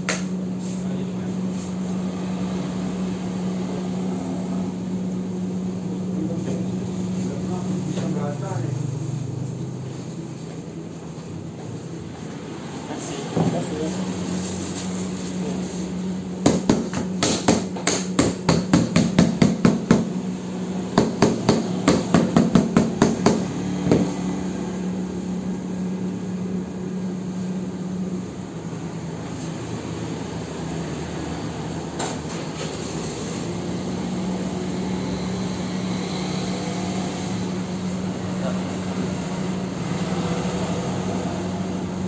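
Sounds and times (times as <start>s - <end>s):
low machine hum: 0.0s - 42.0s
hammer knocking: 21.0s - 24.1s.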